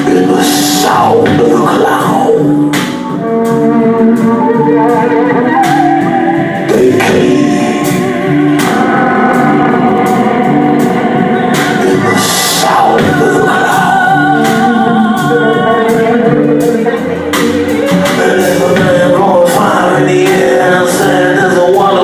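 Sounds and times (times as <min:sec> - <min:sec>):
instrumental music with steady beat: 0:00.0 - 0:22.0.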